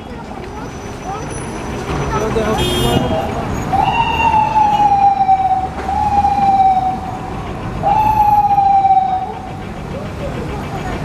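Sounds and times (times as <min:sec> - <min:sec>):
traffic rumble: 0:00.0 - 0:11.0
ambulance siren wailing: 0:03.6 - 0:09.6.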